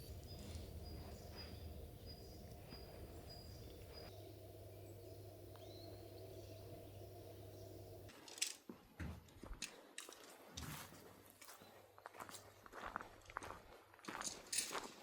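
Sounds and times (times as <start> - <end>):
steady low hum: 0.0 - 8.1.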